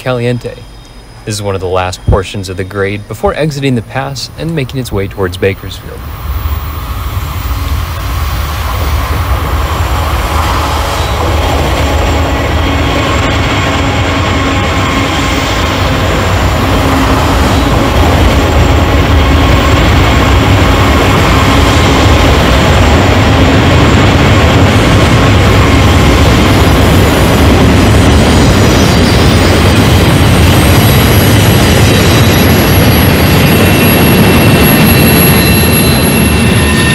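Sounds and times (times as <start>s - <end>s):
faint whining tones: 0.0s - 21.8s
model train engine rumble: 0.0s - 36.2s.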